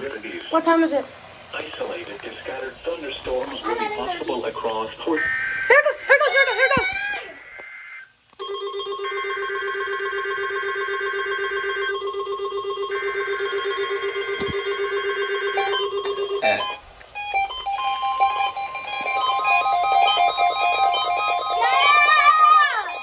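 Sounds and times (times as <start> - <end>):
steady loud alarm tone: 5.2 - 6.4, 7.7 - 23.0
short beeping tones: 11.5 - 23.0.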